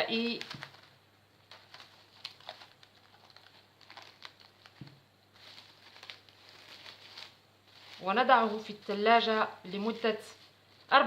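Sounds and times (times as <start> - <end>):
cling film crinkling: 0.0 - 9.3.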